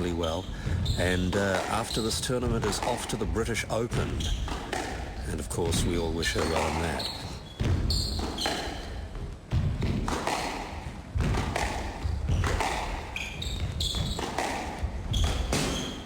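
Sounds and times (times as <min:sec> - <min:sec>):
shoes squeaking on court: 0:00.0 - 0:09.2, 0:09.8 - 0:16.0
squash ball hits: 0:00.0 - 0:16.0.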